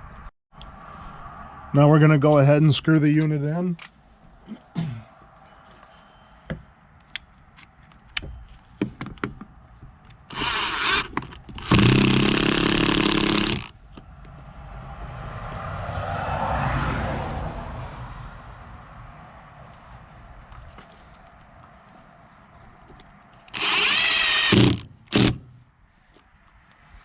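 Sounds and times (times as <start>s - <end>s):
power drill driving screw: 10.3s - 13.7s, 23.5s - 25.5s.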